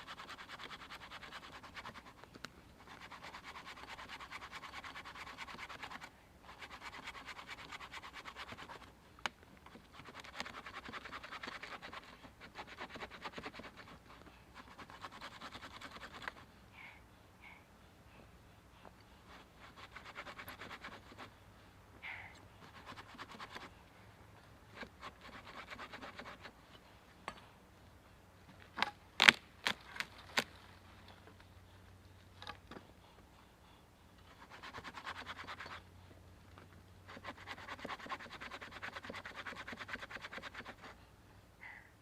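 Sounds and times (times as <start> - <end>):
hand saw cutting a log: 0.0 - 2.2, 2.8 - 8.9, 9.9 - 16.4, 19.3 - 21.3, 22.6 - 23.7, 24.7 - 26.6, 34.3 - 35.8, 37.1 - 41.0.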